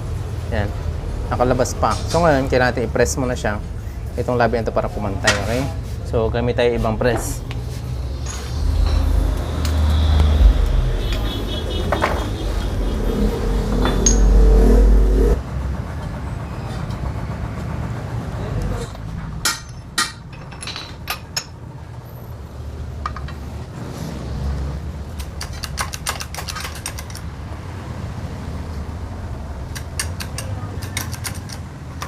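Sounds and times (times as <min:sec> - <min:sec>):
low rumble: 0:07.7 - 0:15.5
metal tools clinking and tapping: 0:14.0 - 0:14.2, 0:19.5 - 0:21.6, 0:25.4 - 0:27.3, 0:29.7 - 0:32.0.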